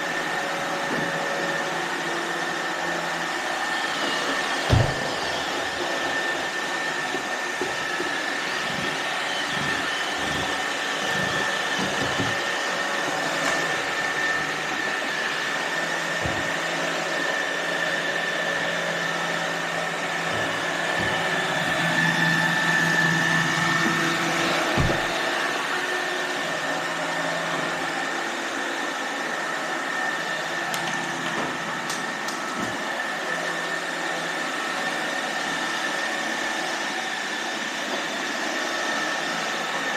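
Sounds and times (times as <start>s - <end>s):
robot vacuum motor hum: 2.8s - 28.6s.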